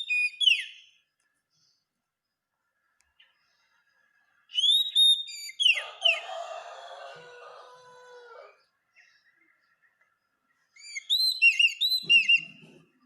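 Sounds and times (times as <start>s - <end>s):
bird whistling song: 0.0s - 1.0s, 4.5s - 6.2s, 10.8s - 12.8s.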